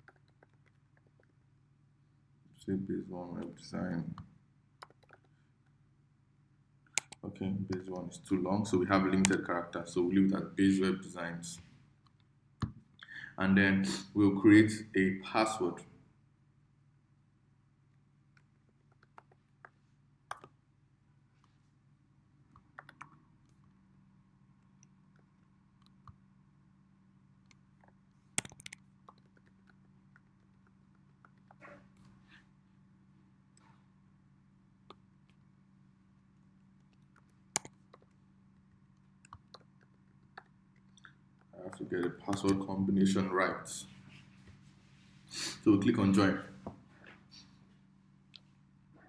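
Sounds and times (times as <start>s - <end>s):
computer keys clicking: 0.0s - 1.3s, 4.8s - 5.3s, 6.9s - 7.2s, 20.3s - 20.6s, 22.5s - 23.2s, 27.4s - 31.6s, 36.8s - 38.2s, 39.0s - 42.7s
low steady hum: 0.0s - 49.0s.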